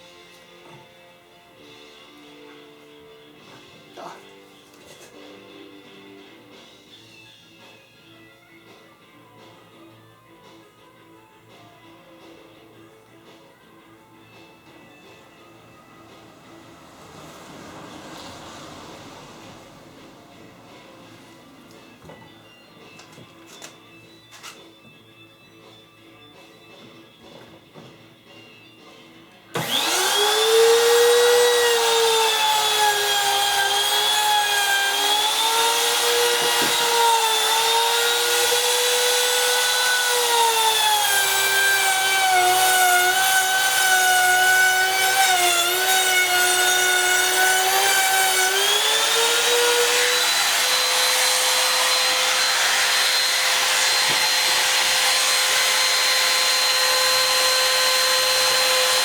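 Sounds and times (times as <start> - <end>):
power tool motor whining: 29.6 - 59.0.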